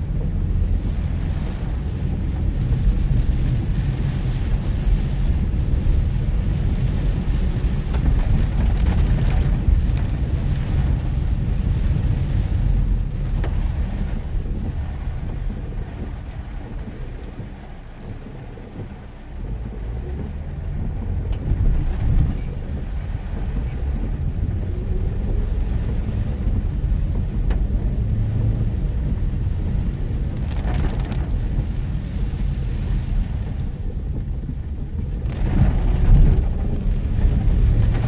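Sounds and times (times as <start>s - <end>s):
engine and tyres rumbling: 0.0s - 38.0s
rain hissing: 0.0s - 38.0s.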